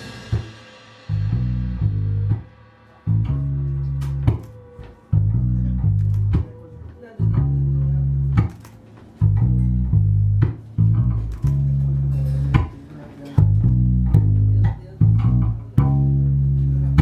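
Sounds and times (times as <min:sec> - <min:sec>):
sharp drum hits: 0:00.0 - 0:04.8
deep bass guitar notes: 0:00.0 - 0:17.0
guitar: 0:00.0 - 0:17.0.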